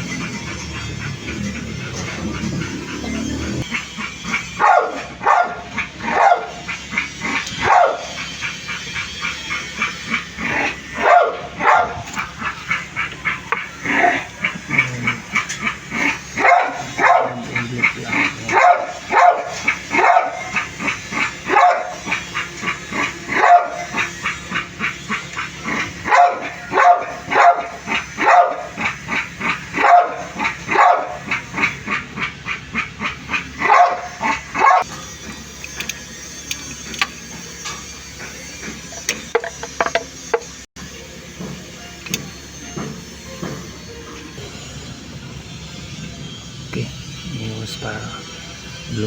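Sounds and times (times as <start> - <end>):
dog barking: 0.1 - 34.9.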